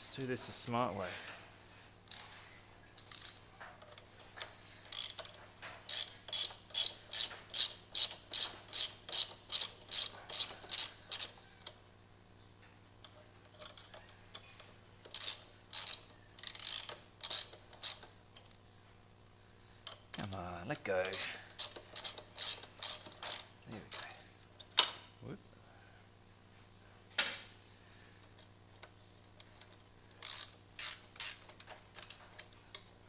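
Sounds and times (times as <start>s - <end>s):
ratchet wrench clicking: 2.1s - 2.4s, 3.0s - 11.4s, 13.5s - 18.6s, 21.0s - 24.2s, 28.8s - 32.8s.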